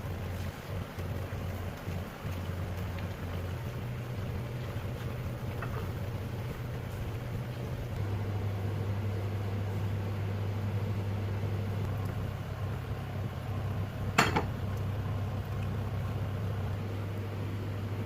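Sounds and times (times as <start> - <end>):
low mechanical hum: 0.0 - 18.0
dish clinking: 14.2 - 14.5.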